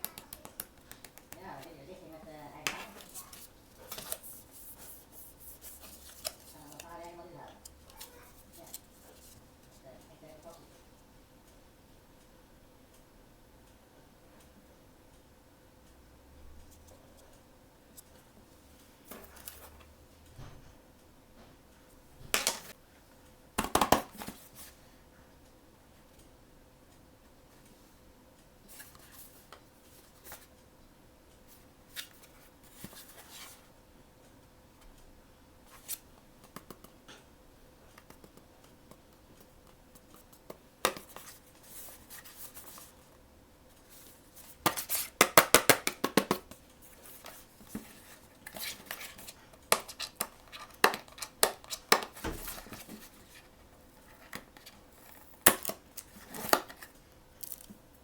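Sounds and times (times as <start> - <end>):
packaging clicks and taps: 0.0 - 1.7, 44.6 - 53.1.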